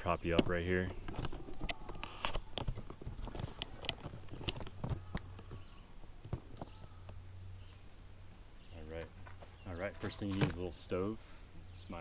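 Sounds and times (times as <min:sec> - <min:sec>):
camping gear clicking and knocking: 0:00.2 - 0:06.8, 0:08.8 - 0:10.8.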